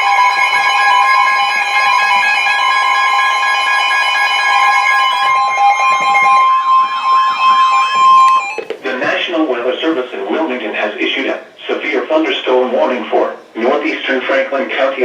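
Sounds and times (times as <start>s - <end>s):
sweeping tone: 0.0s - 8.7s
steady high alert tones: 0.0s - 8.8s.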